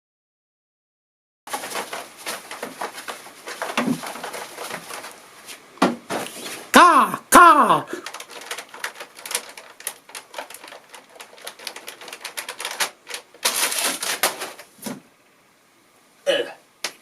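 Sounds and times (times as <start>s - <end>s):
clicking and tapping foley: 1.5s - 5.2s, 8.0s - 14.7s.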